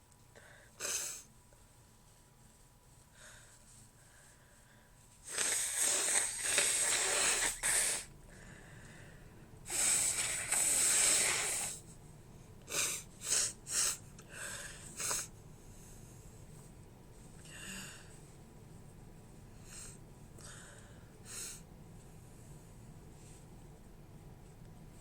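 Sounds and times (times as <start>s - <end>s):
woman blowing her nose: 0.8s - 1.3s, 5.2s - 8.1s, 9.7s - 11.8s, 12.7s - 14.0s.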